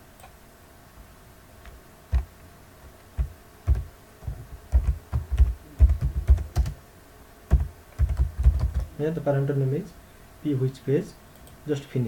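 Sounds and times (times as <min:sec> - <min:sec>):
computer keyboard typing: 0:03.2 - 0:06.8, 0:07.5 - 0:08.9.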